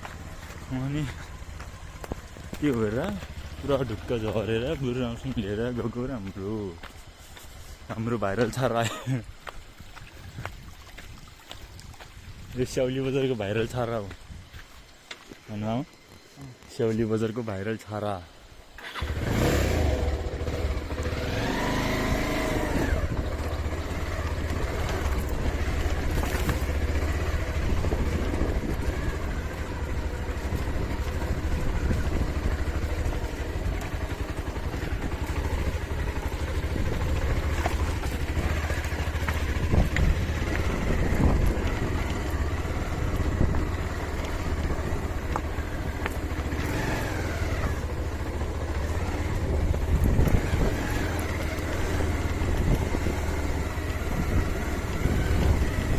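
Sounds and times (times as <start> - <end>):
motorcycle engine running: 0.0 - 9.6, 18.8 - 55.9
wind rumble on microphone: 9.3 - 14.7, 20.4 - 55.9.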